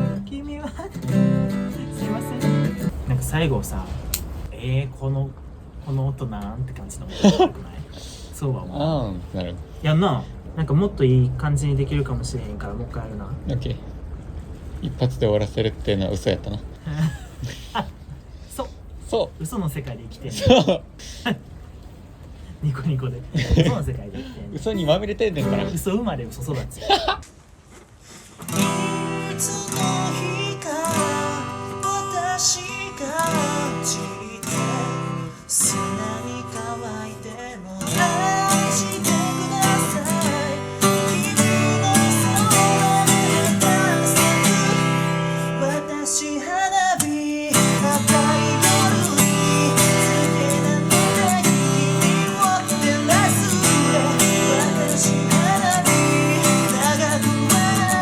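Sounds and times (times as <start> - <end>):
acoustic guitar strumming chords: 0.0 - 3.4, 28.4 - 58.0.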